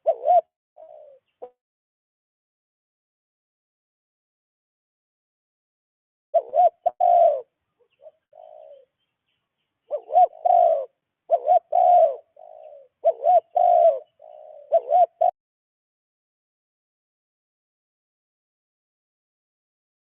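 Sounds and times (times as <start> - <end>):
dove cooing: 0.0 - 1.6, 6.4 - 9.0, 9.9 - 15.4.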